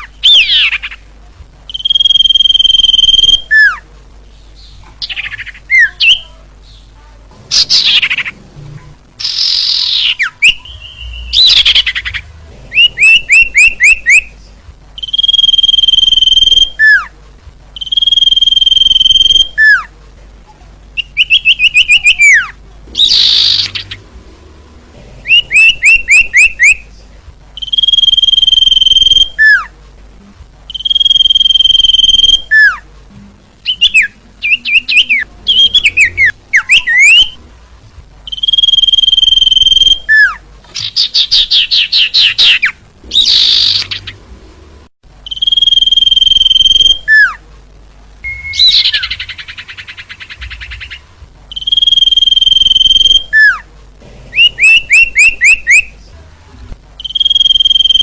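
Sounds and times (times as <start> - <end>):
bird singing whistled phrases: 1.7 - 3.8, 9.2 - 12.1, 12.8 - 14.3, 15.0 - 17.1, 17.8 - 19.9, 21.0 - 24.0, 25.3 - 26.8, 27.6 - 29.7, 30.7 - 32.8, 33.6 - 37.4, 38.3 - 44.1, 45.3 - 47.4, 48.2 - 53.6, 54.4 - 55.9, 57.0 - 58.0.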